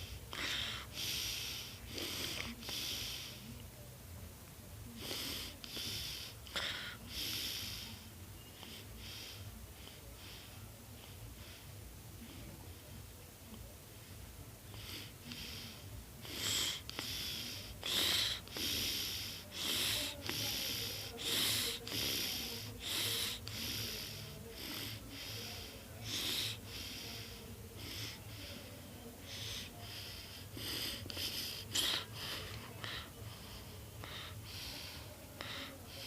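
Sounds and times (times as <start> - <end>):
breathy snuffling: 14.7 - 36.0.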